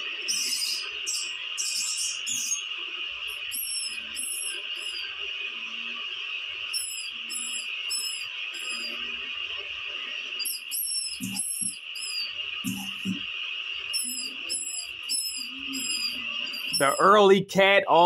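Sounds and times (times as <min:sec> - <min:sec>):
small animal squeaking: 0:10.5 - 0:13.2, 0:13.9 - 0:17.1.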